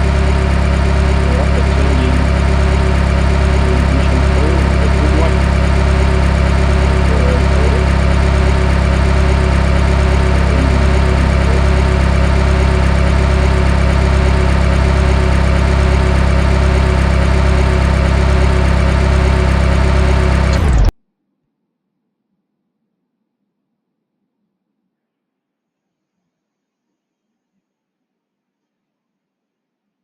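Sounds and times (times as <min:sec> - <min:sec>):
car engine idling: 0:00.0 - 0:20.9.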